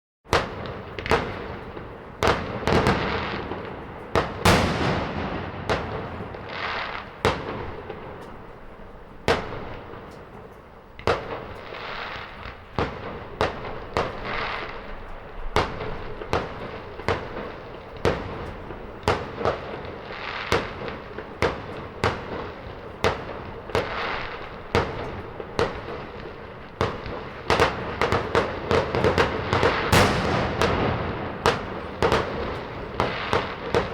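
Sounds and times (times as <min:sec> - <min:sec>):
fireworks bangs: 0:00.3 - 0:33.9
fireworks crackling: 0:00.3 - 0:33.9
distant explosions: 0:00.4 - 0:10.3, 0:15.5 - 0:33.9.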